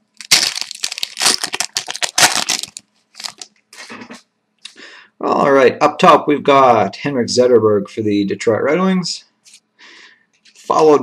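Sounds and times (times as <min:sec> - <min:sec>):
wrapper tearing and crinkling: 0:00.1 - 0:03.5.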